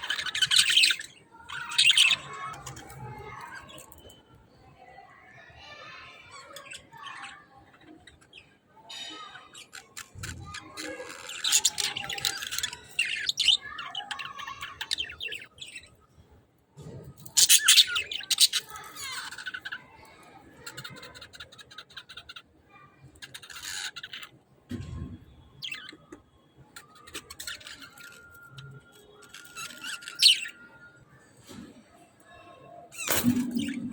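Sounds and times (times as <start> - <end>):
budgerigars chirping and squawking: 0.0 - 4.1, 6.4 - 16.0, 17.2 - 19.9, 20.6 - 22.4, 23.1 - 24.4, 25.6 - 30.9, 32.9 - 33.9.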